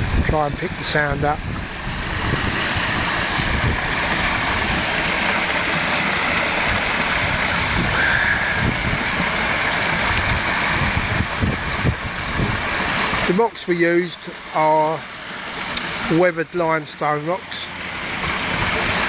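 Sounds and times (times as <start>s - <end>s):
wind buffeting microphone: 0.0s - 13.4s, 18.0s - 19.0s
waterfall splashing into pond: 0.0s - 19.0s.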